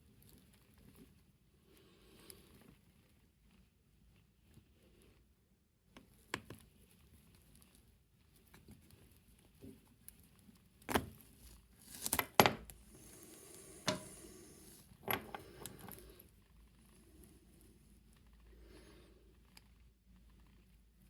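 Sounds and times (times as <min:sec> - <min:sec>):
small parts and tools clattering: 0:11.9 - 0:16.1.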